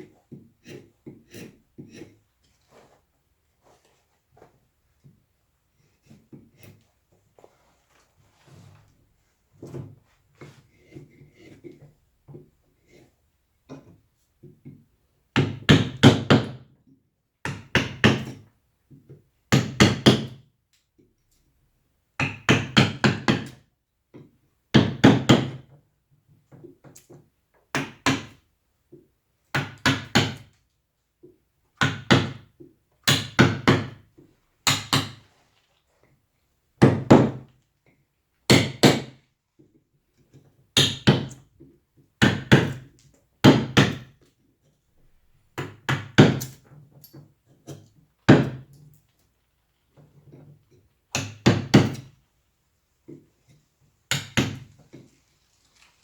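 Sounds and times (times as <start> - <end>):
mallet striking chisel into wood: 51.1 - 52.1, 54.1 - 54.6.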